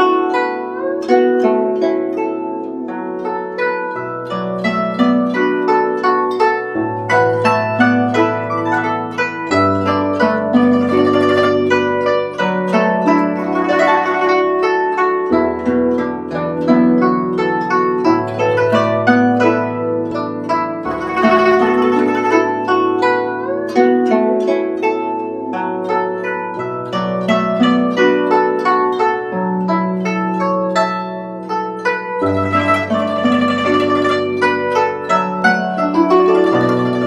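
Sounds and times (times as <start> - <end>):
guzheng plucked melody: 0.0 - 37.0.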